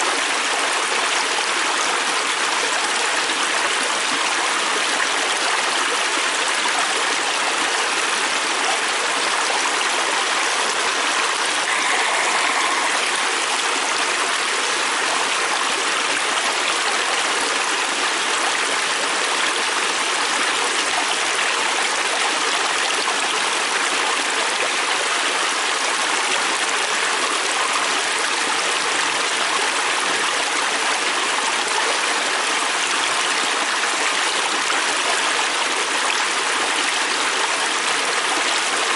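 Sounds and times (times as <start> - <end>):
river rushing over rocks: 11.1 - 15.9.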